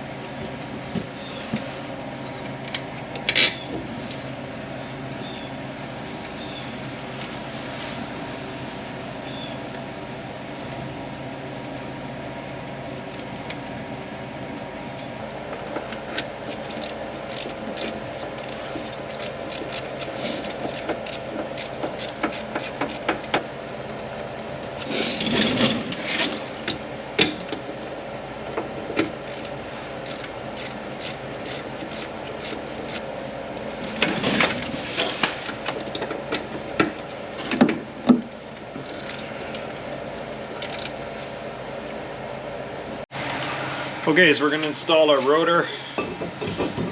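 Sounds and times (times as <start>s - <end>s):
ratchet wrench ticking: 16.6s - 23.3s, 29.2s - 33.0s, 38.9s - 39.2s, 40.6s - 40.9s.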